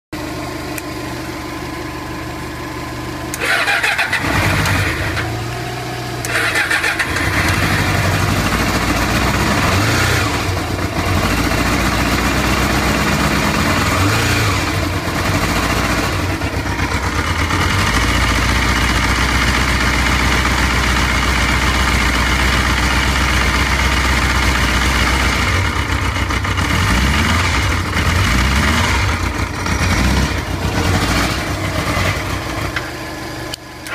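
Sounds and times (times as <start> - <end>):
motorcycle engine revving and idling: 0.2 - 33.9
motorcycle engine starter cranking: 3.3 - 5.4, 6.2 - 7.8.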